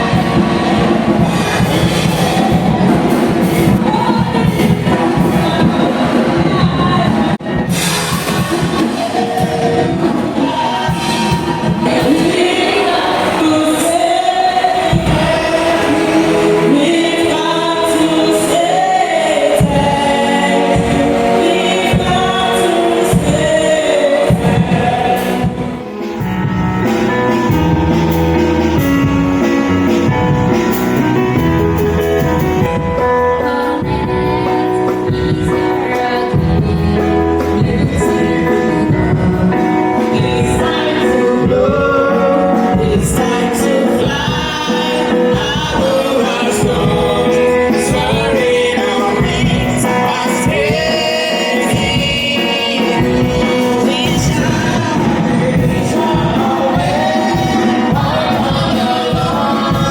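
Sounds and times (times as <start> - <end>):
gospel singing voices: 0.0 - 59.9.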